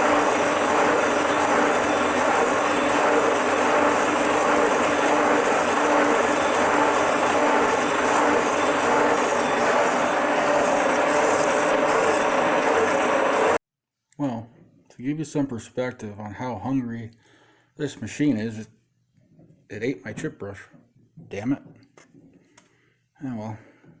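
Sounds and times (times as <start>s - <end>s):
milling machine cutting steel: 0.0s - 13.6s.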